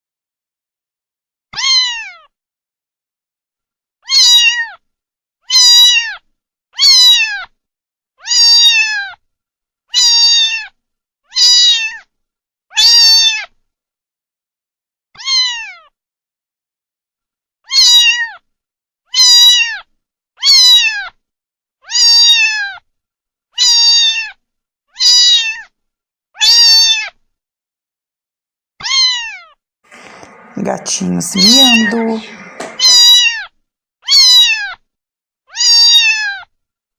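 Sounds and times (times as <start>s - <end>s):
cat meowing: 1.6s - 2.2s, 29.9s - 33.2s.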